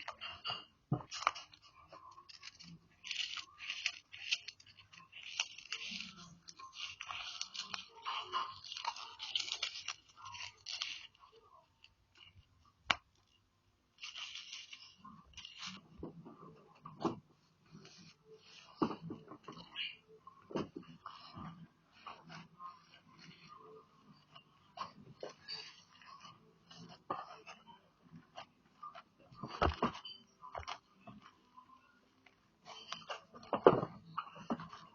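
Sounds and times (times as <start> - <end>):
slime crackling and popping: 0.0 - 13.3.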